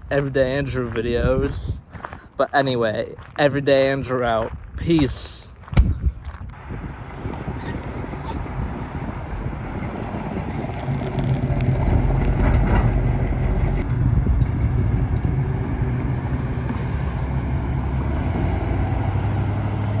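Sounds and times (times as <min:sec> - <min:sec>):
car engine running: 0:06.6 - 0:20.0.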